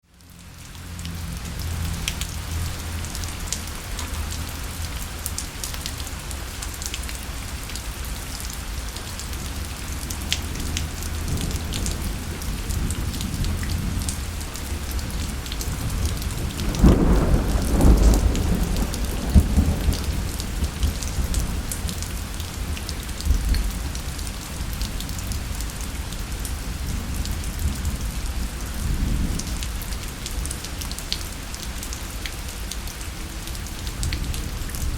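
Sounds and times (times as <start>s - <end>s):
steady rain falling: 0.0s - 34.9s
sharp raindrop ticks: 0.2s - 7.8s, 9.1s - 24.2s
thunder rumbling: 10.4s - 22.4s.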